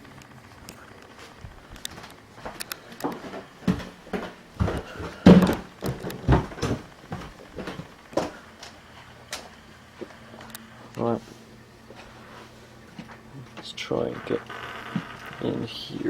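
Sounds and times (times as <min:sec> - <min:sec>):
knocks and thumps: 0:03.1 - 0:08.4.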